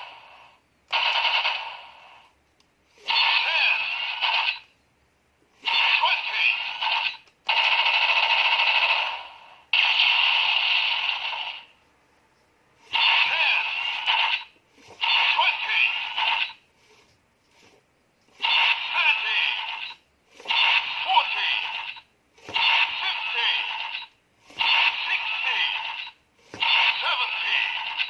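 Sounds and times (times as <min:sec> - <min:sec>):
toy gun electronic sound effects: 0:03.0 - 0:04.7, 0:05.6 - 0:09.2, 0:12.9 - 0:16.6, 0:18.4 - 0:28.0
toy gun voice calls: 0:03.1 - 0:04.1, 0:05.7 - 0:07.1, 0:13.0 - 0:13.8, 0:15.0 - 0:16.4, 0:18.4 - 0:20.0, 0:20.8 - 0:22.0, 0:22.6 - 0:24.0, 0:24.6 - 0:28.0.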